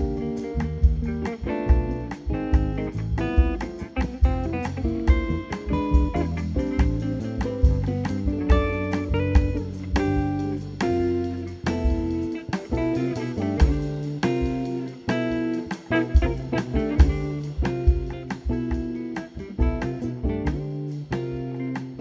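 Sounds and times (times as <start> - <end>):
double bass: 0.0 - 14.2
drum hits: 0.0 - 20.8
guitar chords and melody: 0.0 - 22.0.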